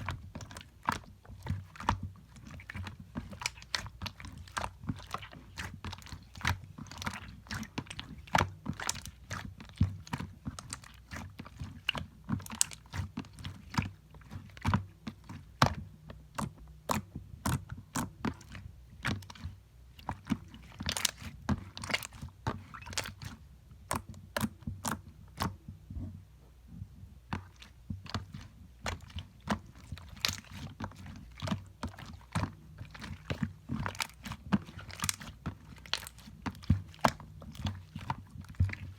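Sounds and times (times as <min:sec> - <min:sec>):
slime squished by hand: 0:00.0 - 0:25.6, 0:27.3 - 0:38.9.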